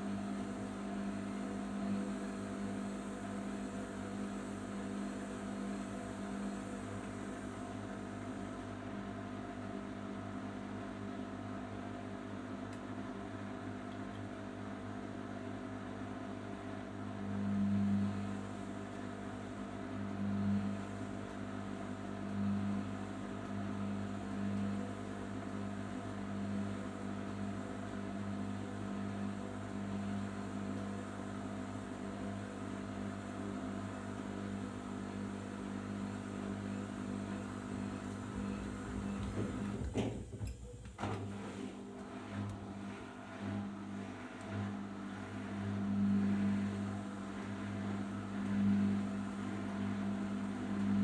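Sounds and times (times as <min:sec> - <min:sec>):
washing machine motor hum: 0:00.0 - 0:51.0.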